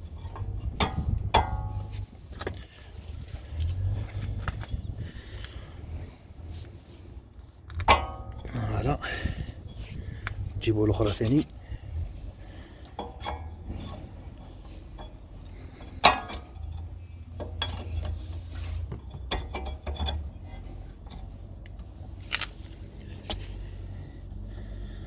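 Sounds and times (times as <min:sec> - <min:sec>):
metal tools clinking: 0:07.7 - 0:23.2.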